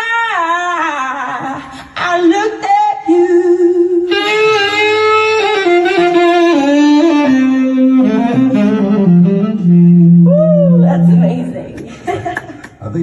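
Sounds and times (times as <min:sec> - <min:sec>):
saxophone playing slow phrase: 0:04.1 - 0:11.4.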